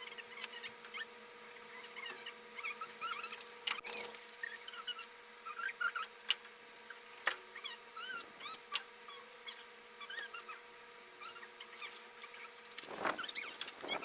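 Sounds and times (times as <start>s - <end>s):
dogs whining and yipping: 0.0s - 6.1s, 7.6s - 10.6s, 11.2s - 12.5s.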